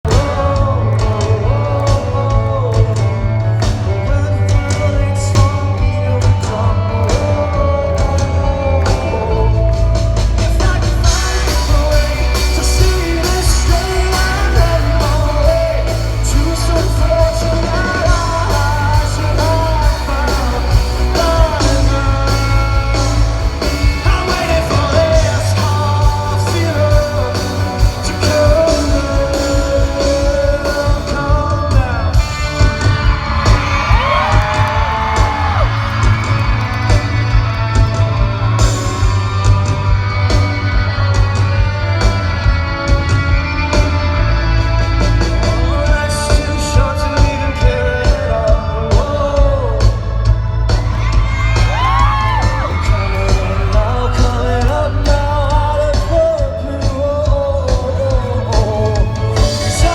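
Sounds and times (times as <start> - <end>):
bass guitar: 0.0 - 59.9
drums: 0.0 - 59.9
person singing: 0.0 - 59.9.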